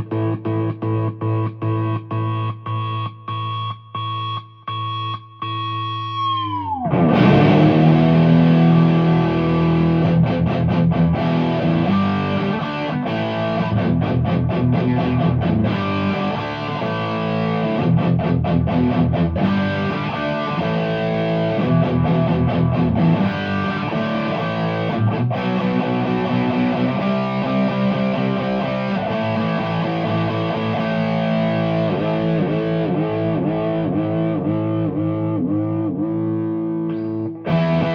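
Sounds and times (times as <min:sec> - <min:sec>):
distorted electric guitar: 0:00.0 - 0:03.4, 0:05.6 - 0:37.9.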